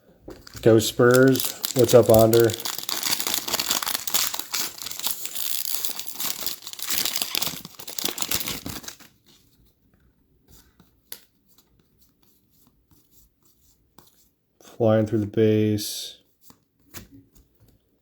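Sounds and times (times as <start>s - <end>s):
foil wrapper tearing and crinkling: 0.4s - 9.2s.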